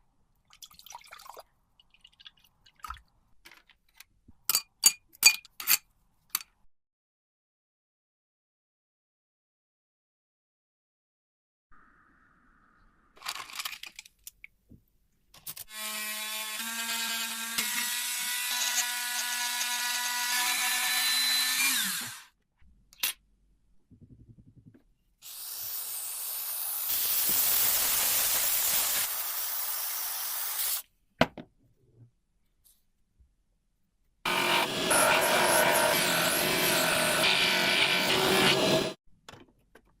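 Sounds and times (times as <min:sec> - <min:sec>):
electric power tool on metal: 0:34.3 - 0:39.0.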